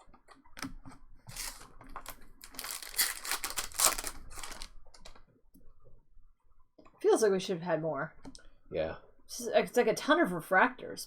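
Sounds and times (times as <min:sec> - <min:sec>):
foil wrapper crinkling: 0:01.3 - 0:05.2.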